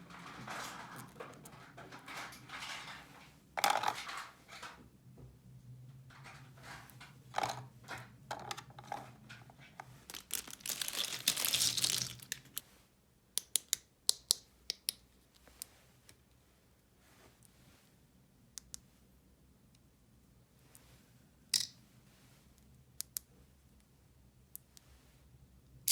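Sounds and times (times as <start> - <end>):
plastic packaging crinkling and tearing: 10.0 - 12.6
plastic toy pieces clicking: 10.1 - 12.6.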